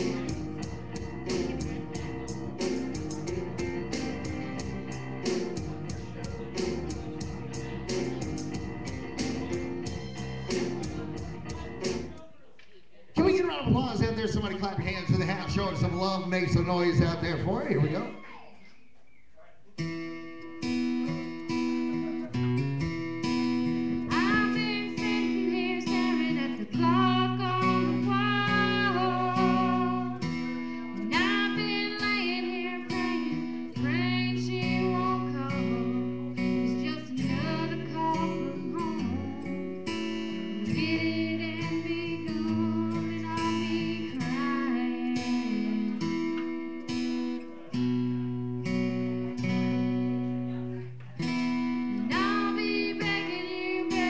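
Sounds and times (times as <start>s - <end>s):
acoustic guitar: 0.0s - 12.5s, 13.1s - 54.0s
person singing: 24.0s - 47.1s, 51.9s - 54.0s.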